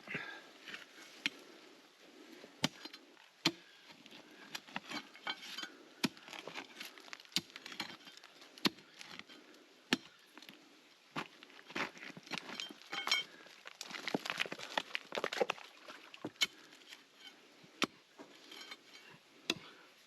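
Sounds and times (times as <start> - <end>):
faint rustling and scraping: 0.6 - 9.6, 10.2 - 20.0.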